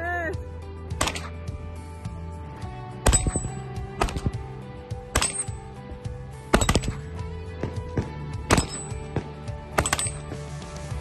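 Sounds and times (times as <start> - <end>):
gunshots: 0.9 - 1.5, 3.0 - 4.5, 5.1 - 5.7, 6.5 - 7.2, 8.0 - 10.3.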